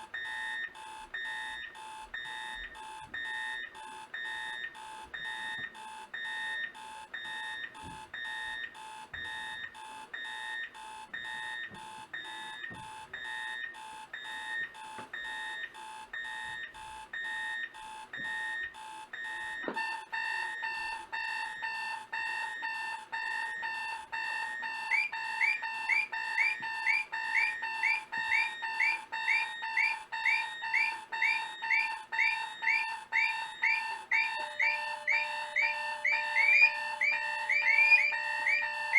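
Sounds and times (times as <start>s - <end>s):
alarm clocks beeping: 0.0s - 38.9s
fast chirping alarm: 17.2s - 38.9s.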